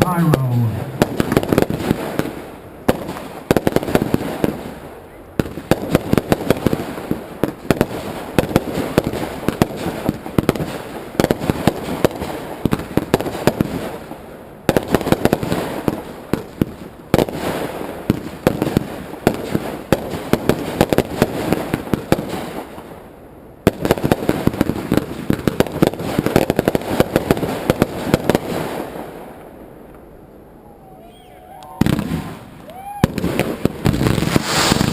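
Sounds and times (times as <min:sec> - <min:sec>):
fireworks crackling: 0:00.0 - 0:04.6, 0:30.8 - 0:34.9.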